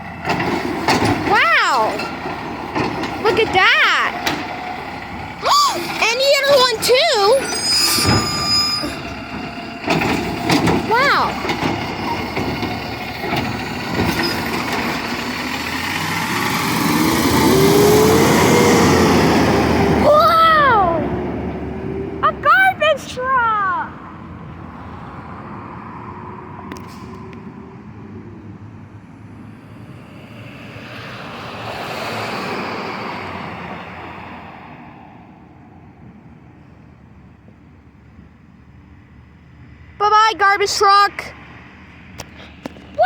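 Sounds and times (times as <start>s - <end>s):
garbage truck engine revving: 0.0s - 23.2s
rising engine whine: 2.0s - 36.2s.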